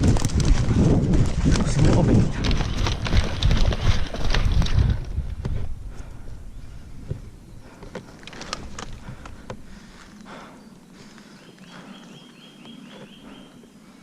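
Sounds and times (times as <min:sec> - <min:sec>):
footsteps snapping twigs: 0:07.8 - 0:09.5.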